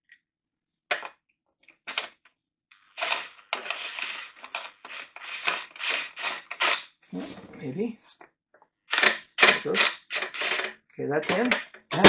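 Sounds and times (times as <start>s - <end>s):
screws rattling and scraping: 3.0s - 7.6s, 8.9s - 12.0s.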